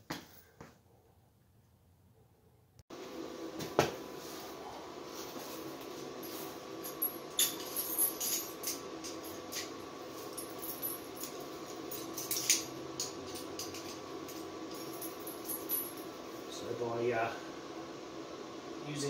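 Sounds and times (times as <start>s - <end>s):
faint steady hum: 0.3s - 19.0s
chain links and tools clinking: 6.2s - 16.1s.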